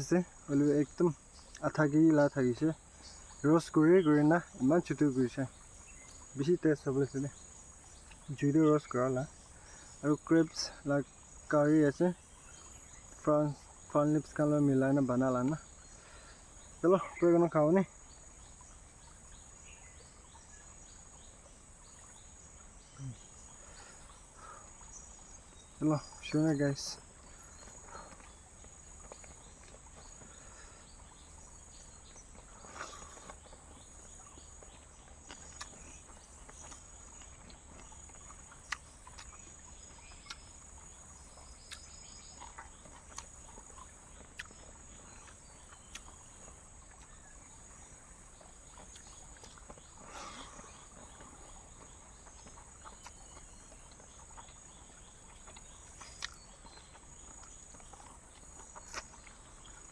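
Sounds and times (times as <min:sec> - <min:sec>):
jungle insects chorus: 0:00.0 - 0:59.9
crunching of crispy food: 0:32.0 - 0:47.4, 0:48.5 - 0:59.9.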